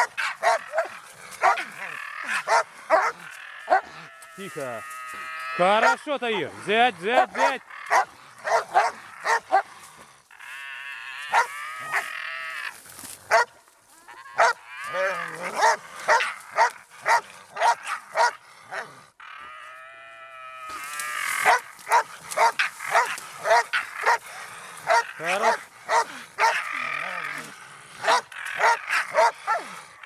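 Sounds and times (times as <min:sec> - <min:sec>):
dog barking: 0:00.0 - 0:03.9, 0:07.2 - 0:09.7, 0:11.3 - 0:12.0, 0:13.3 - 0:13.5, 0:14.4 - 0:14.6, 0:15.5 - 0:18.9, 0:21.4 - 0:26.7, 0:28.0 - 0:29.7
dog drawn-out calls: 0:00.0 - 0:19.8, 0:20.7 - 0:30.0.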